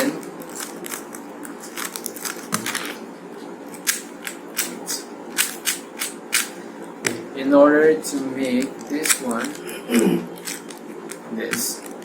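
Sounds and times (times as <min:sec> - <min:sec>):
puzzle cube plastic clicks: 0:10.4 - 0:12.0.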